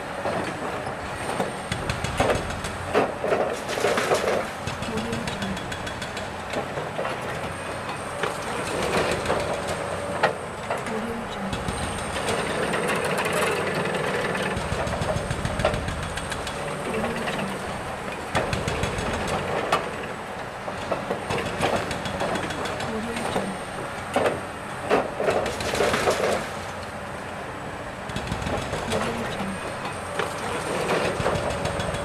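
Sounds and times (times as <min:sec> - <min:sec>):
knocks and clanks: 0:01.7 - 0:06.9, 0:10.8 - 0:20.1, 0:28.1 - 0:32.0
machinery rumbling: 0:07.9 - 0:20.1, 0:28.2 - 0:32.0.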